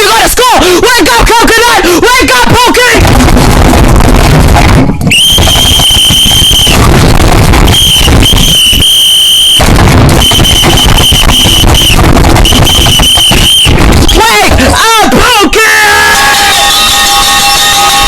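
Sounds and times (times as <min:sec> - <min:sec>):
dense crackling noise: 0:01.1 - 0:18.0
shrill whistle-like tone: 0:05.1 - 0:06.9, 0:07.6 - 0:09.6, 0:10.2 - 0:13.8, 0:16.1 - 0:18.0.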